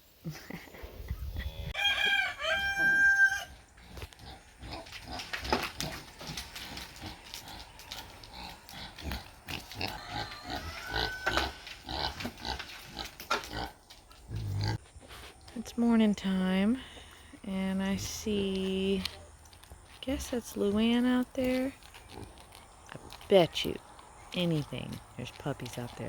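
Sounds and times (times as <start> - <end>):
farm animal high call: 1.8 - 3.6, 9.8 - 11.6
animal grunts: 7.0 - 14.8.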